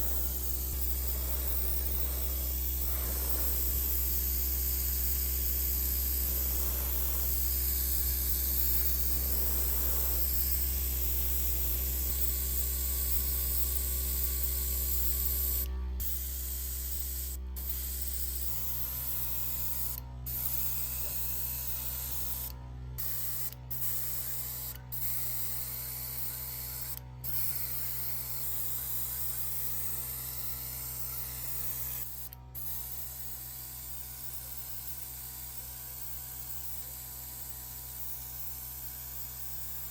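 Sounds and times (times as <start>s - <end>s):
low steady hum: 0.0s - 23.2s.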